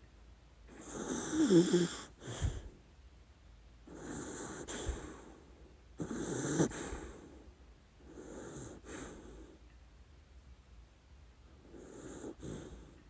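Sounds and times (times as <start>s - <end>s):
dog snoring: 0.7s - 2.7s, 3.8s - 5.4s, 6.0s - 7.4s, 8.0s - 9.6s, 11.6s - 13.0s.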